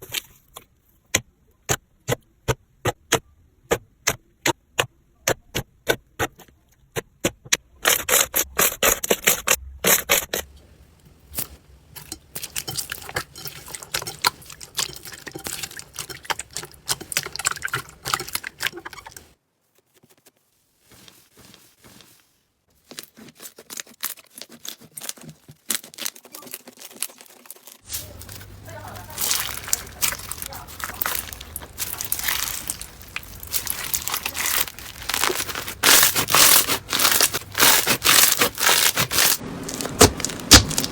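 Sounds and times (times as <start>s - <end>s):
slime popping and squishing: 22.8s - 40.9s.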